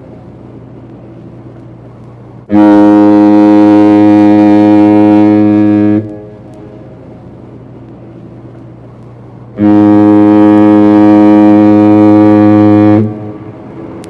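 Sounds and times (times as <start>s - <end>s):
low steady hum: 0.0s - 14.0s
ship's horn blast: 2.4s - 14.0s.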